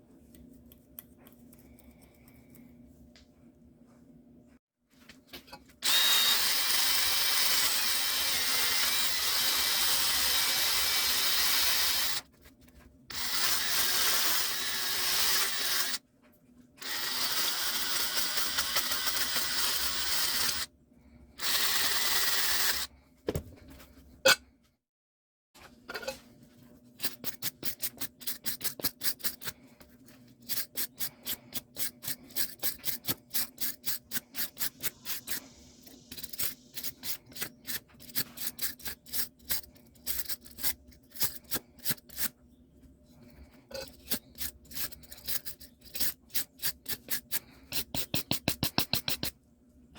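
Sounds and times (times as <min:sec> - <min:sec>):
small power tool running: 0:05.8 - 0:12.2, 0:13.1 - 0:16.0, 0:16.8 - 0:20.7, 0:21.4 - 0:22.9
filing strokes on metal: 0:27.0 - 0:29.6, 0:30.4 - 0:42.3, 0:43.8 - 0:49.3.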